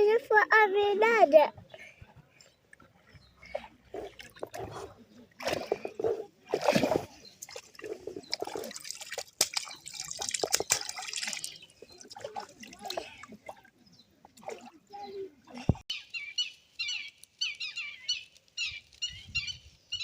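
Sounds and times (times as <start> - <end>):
water splashing and trickling: 2.7 - 15.9.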